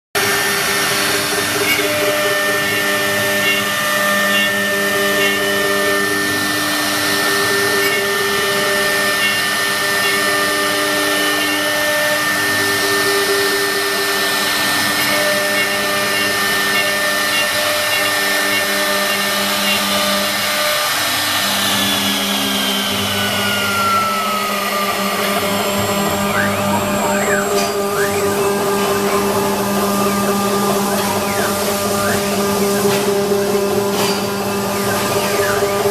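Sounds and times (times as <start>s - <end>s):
router spindle whine: 0.2s - 35.9s
wood cutting noise: 0.2s - 35.9s
drive motors humming: 14.9s - 35.9s.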